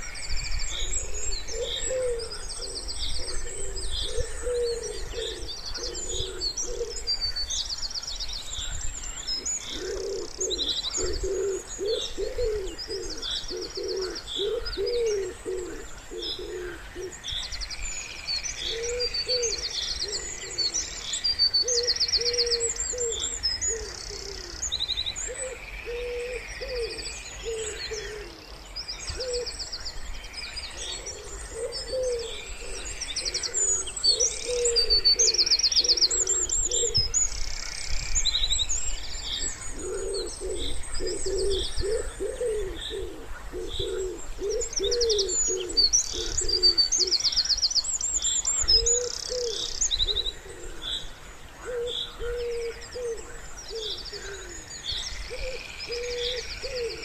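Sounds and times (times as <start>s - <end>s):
songbirds chirping and trilling: 0.0s - 57.0s
wood pigeon cooing: 0.8s - 7.2s, 9.6s - 17.2s, 18.6s - 20.9s, 21.6s - 24.7s, 25.3s - 28.4s, 29.1s - 29.6s, 30.8s - 37.2s, 39.7s - 47.2s, 48.7s - 51.0s, 51.6s - 54.6s, 55.3s - 57.0s.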